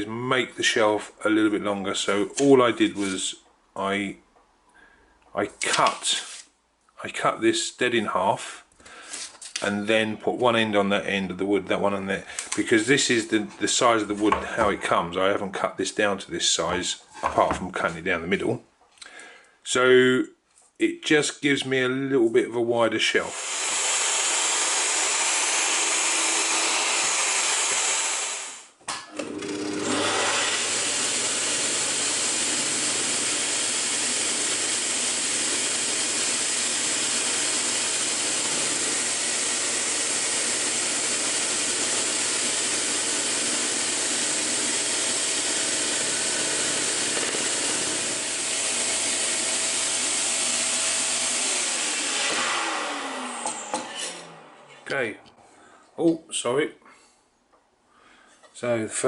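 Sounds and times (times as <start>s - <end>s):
scroll saw whirring and buzzing: 23.3s - 54.8s.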